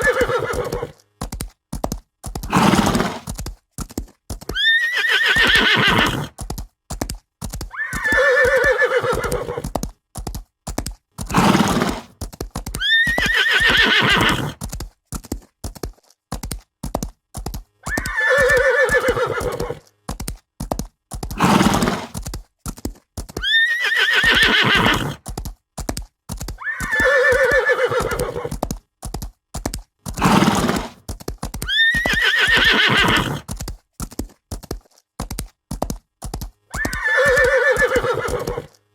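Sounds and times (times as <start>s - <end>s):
horses neighing: 0.0s - 1.0s, 2.5s - 3.3s, 4.5s - 6.3s, 7.7s - 9.7s, 11.3s - 12.1s, 12.8s - 14.6s, 17.8s - 19.9s, 21.4s - 22.2s, 23.4s - 25.2s, 26.6s - 28.6s, 30.2s - 31.0s, 31.6s - 33.5s, 36.7s - 38.8s
hoofbeats clattering: 24.2s - 38.8s.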